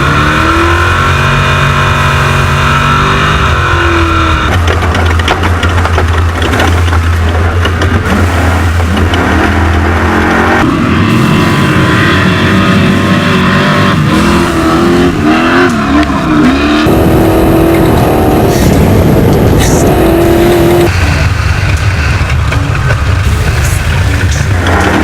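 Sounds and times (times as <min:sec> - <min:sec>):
off-road vehicle engine revving: 0:00.0 - 0:25.0
rattling and clatter: 0:03.0 - 0:11.4, 0:14.0 - 0:25.0.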